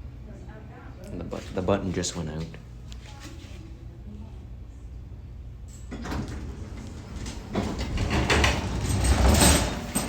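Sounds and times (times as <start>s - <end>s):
elevator doors rumbling open: 5.9s - 10.0s.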